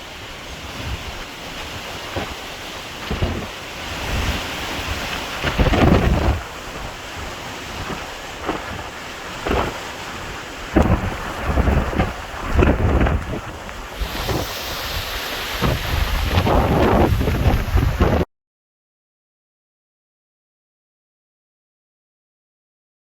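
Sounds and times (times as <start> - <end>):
hiss of wind and rain: 0.0 - 18.3
wind buffeting microphone: 0.0 - 18.3
wind gusting: 0.0 - 18.3.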